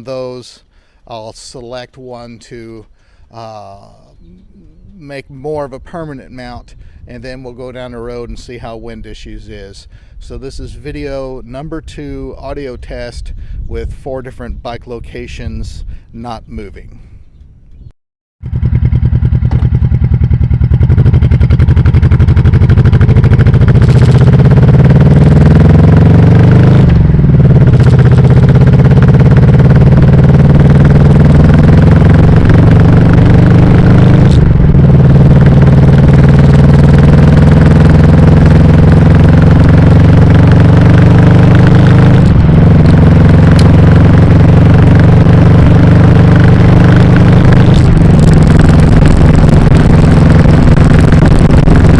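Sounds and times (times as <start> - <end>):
motorcycle engine revving through gears: 18.4 - 51.9.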